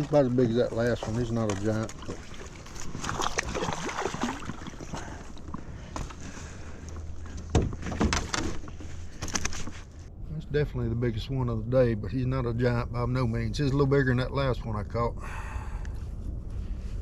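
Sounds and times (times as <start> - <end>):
water sloshing and splashing: 0.0 - 9.9.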